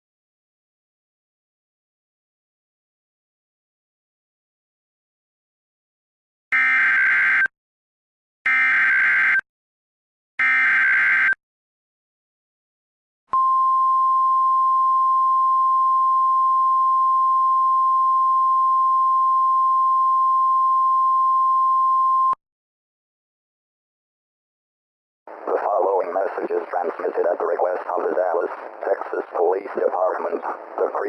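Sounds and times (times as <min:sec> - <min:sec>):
steady alarm tone: 0:06.6 - 0:07.5, 0:08.5 - 0:09.4, 0:10.4 - 0:11.4.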